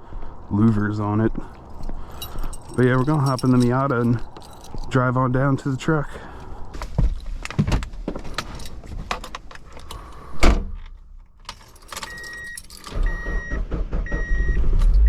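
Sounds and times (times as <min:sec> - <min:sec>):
keys jangling and clicking: 0:00.7 - 0:13.4
car warning chime: 0:11.9 - 0:15.0.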